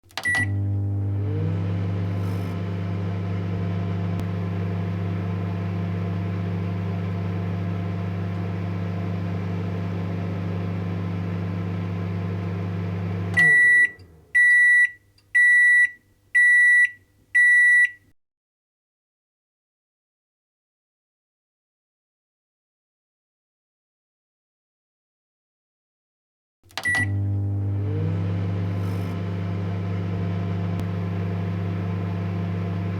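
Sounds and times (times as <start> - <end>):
microwave humming: 0.0 - 14.7, 26.7 - 32.9
microwave beeps: 0.2 - 1.2, 11.6 - 18.0, 26.8 - 32.9.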